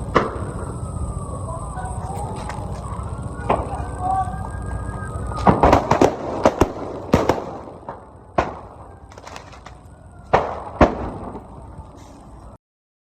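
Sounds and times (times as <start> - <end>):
fireworks bangs and pops: 0.0 - 0.8, 1.9 - 12.0.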